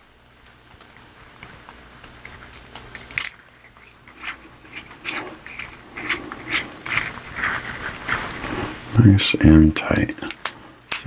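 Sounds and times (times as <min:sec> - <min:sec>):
small scrapes: 0:02.2 - 0:08.8
pen parts clicking: 0:02.7 - 0:07.2.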